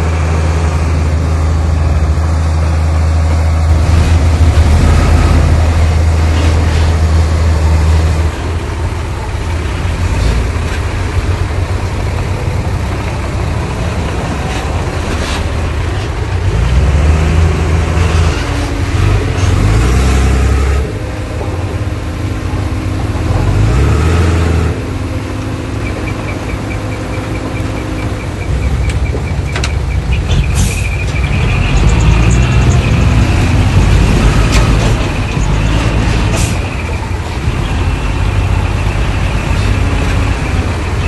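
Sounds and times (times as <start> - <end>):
heavy machinery diesel engine: 0.0 - 41.0.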